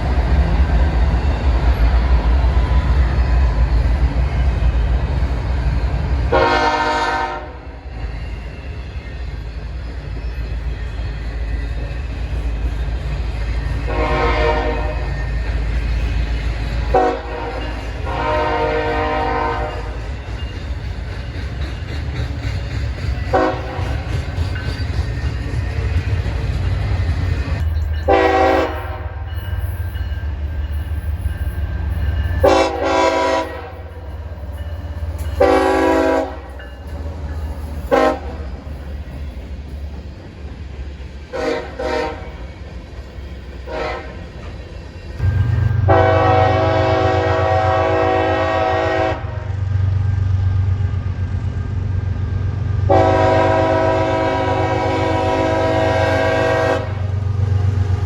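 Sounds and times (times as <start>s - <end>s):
locomotive air horn blasts: 6.3s - 7.8s, 13.9s - 15.1s, 16.9s - 20.0s, 23.3s - 23.9s, 28.1s - 29.3s, 32.4s - 34.0s, 35.4s - 36.5s, 37.9s - 38.4s, 41.4s - 42.3s, 43.7s - 44.2s, 45.8s - 49.6s, 52.9s - 57.1s.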